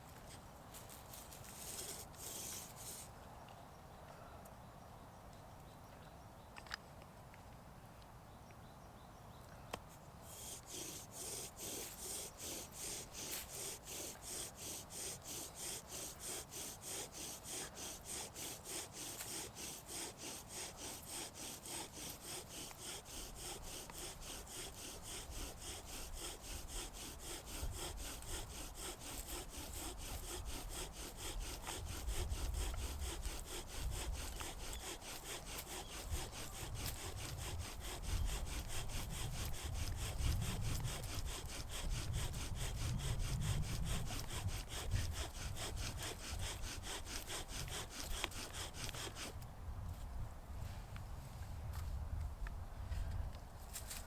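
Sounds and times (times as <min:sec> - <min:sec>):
wood being worked in strokes: 0:00.0 - 0:03.2, 0:09.7 - 0:49.5.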